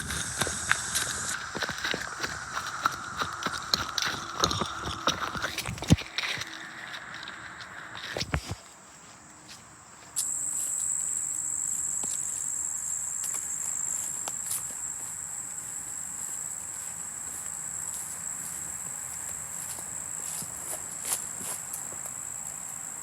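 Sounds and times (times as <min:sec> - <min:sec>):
insect trilling: 0:00.0 - 0:08.6, 0:10.2 - 0:23.0
faint clicks of steps: 0:00.0 - 0:10.9.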